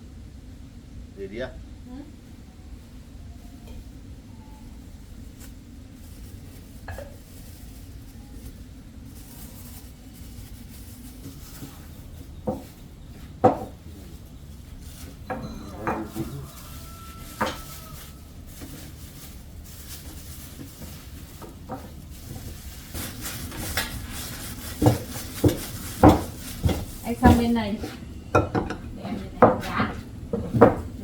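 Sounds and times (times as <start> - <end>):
utensils knocking on cookware: 15.3 - 16.4, 23.4 - 31.0.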